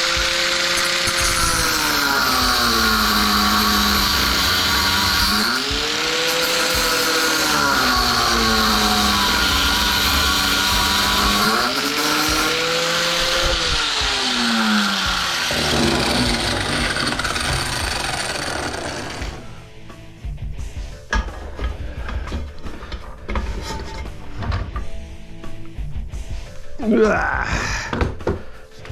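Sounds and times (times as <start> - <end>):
power tool grinding metal: 0.0 - 19.7.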